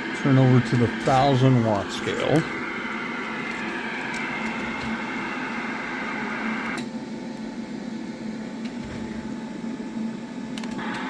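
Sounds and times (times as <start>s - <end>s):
radio static hiss: 0.0s - 6.8s.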